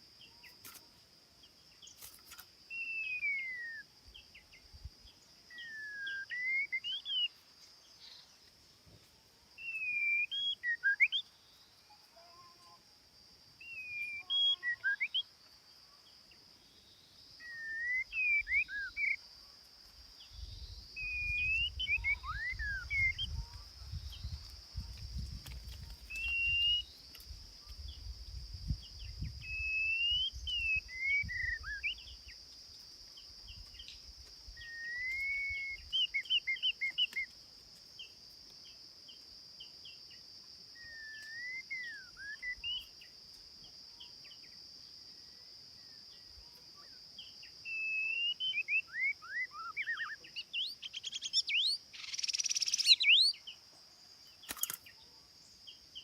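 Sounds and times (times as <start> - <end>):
songbird singing whistled phrases: 2.7 - 4.5, 5.5 - 7.4, 9.6 - 12.8, 13.6 - 15.3, 17.4 - 19.2, 20.2 - 24.4, 26.1 - 27.0, 29.0 - 32.4, 34.6 - 37.3, 40.8 - 43.0, 47.6 - 53.5.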